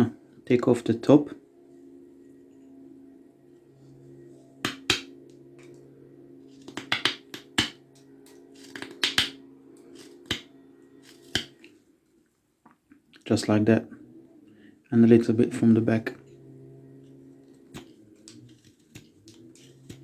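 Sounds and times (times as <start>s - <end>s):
steady low hum: 0.0s - 20.0s
knife cutting wooden branch snaps: 8.6s - 9.4s, 10.2s - 10.5s, 11.2s - 11.5s.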